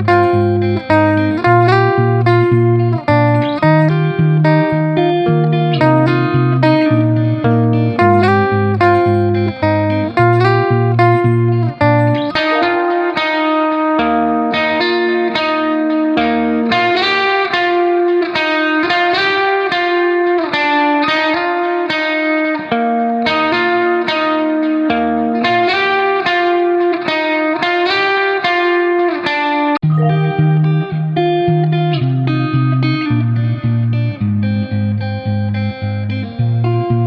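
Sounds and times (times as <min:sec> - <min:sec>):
bass line: 0:00.0 - 0:13.0, 0:29.8 - 0:31.5
plucked guitar melody: 0:00.0 - 0:37.0.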